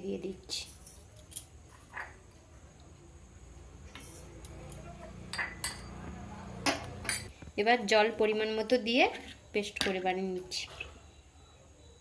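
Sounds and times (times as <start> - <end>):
spoon clinking containers: 3.9 - 6.0, 6.6 - 7.3.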